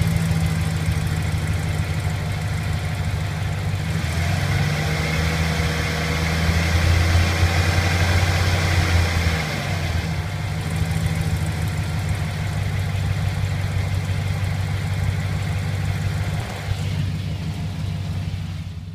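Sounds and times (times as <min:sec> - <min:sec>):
light engine ticking: 0:00.0 - 0:03.9, 0:10.3 - 0:16.6
pickup engine idling: 0:00.0 - 0:18.9.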